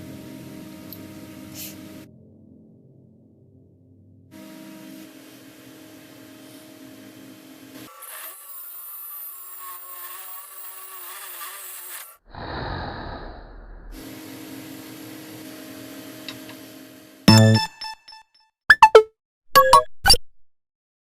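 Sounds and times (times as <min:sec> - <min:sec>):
electric drill boring into wood: 0:07.7 - 0:12.2.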